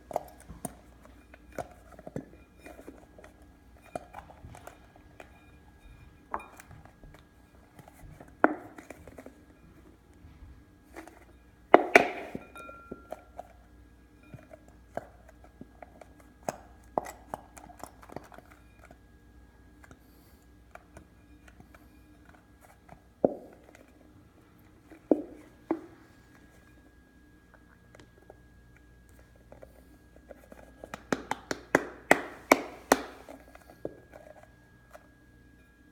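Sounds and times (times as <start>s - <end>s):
bottle and spoon knocking on bowl: 11.8s - 13.2s.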